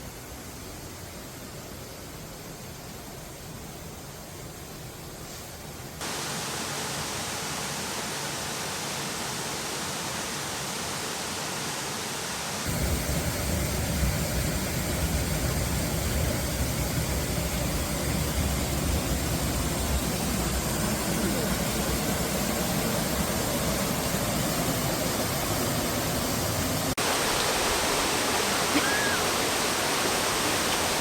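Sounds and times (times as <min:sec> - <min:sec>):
waterfall rushing: 0:06.0 - 0:13.4, 0:18.8 - 0:31.0.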